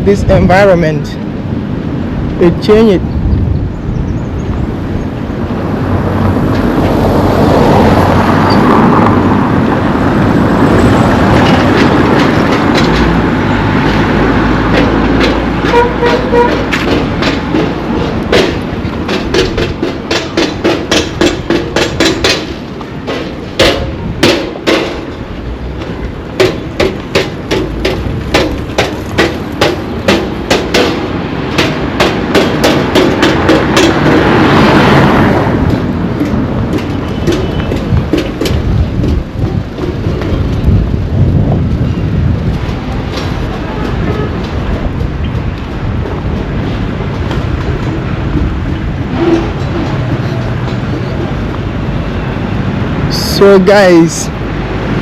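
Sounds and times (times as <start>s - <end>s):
steady outdoor noise: 0.0s - 55.0s
sharp rhythmic knocks: 11.4s - 40.9s.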